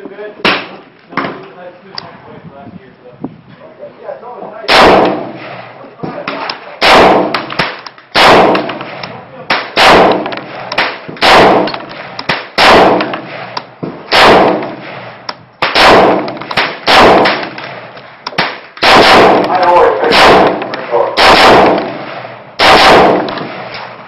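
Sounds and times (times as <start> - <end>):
rifle gunshots with echo: 4.7 - 24.0.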